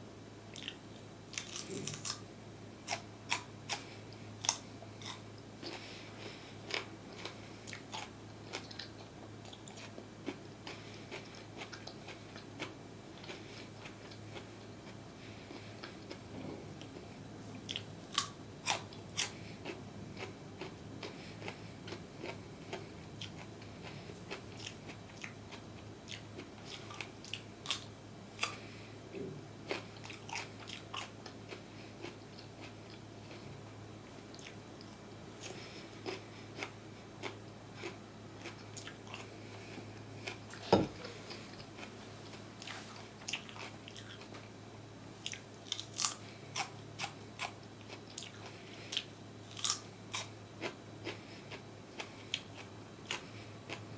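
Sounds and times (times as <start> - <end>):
person chewing crunchy food: 0.5 - 28.9, 29.6 - 33.6, 34.2 - 44.5, 45.2 - 53.9
loud knock: 40.7 - 41.0.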